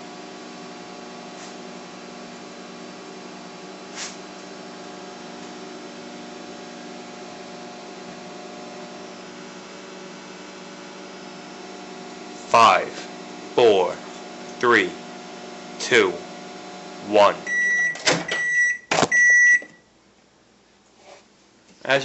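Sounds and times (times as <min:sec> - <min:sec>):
microwave oven humming: 0:00.0 - 0:21.9.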